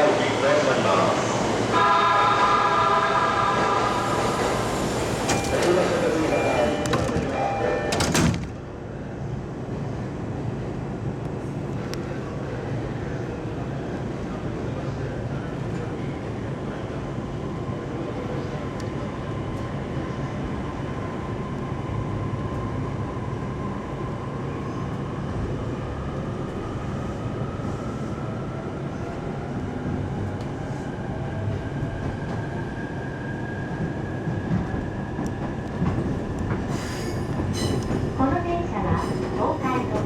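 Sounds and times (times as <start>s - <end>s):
train running rumble: 33.8s - 40.0s.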